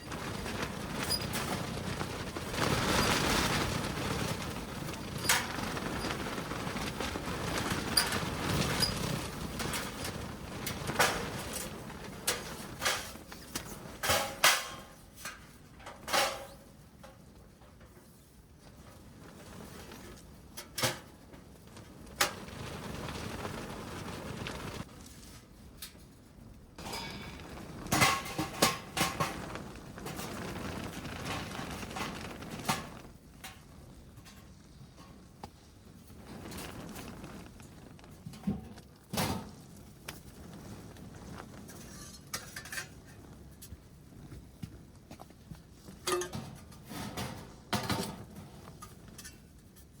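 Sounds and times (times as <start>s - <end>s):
hard objects knocking and clattering: 26.8s - 33.6s.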